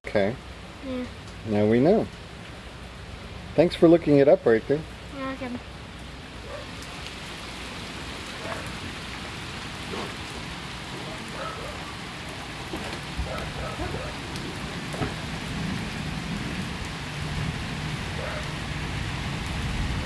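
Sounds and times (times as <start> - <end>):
rain falling on water and pavement: 0.0 - 20.0.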